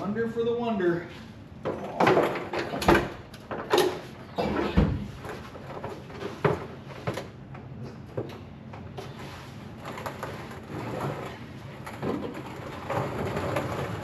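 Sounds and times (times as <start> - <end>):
scraping under truck: 9.1 - 14.0.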